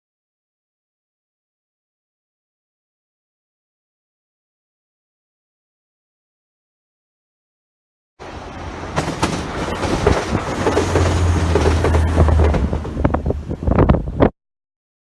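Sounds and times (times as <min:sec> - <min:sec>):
train rumbling hum: 0:08.2 - 0:14.3
wheels clattering on rails: 0:08.4 - 0:14.0.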